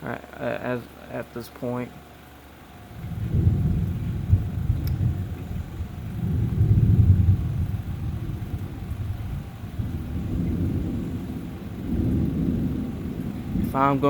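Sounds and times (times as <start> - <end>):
distant thunder rumbling: 2.8 - 14.0.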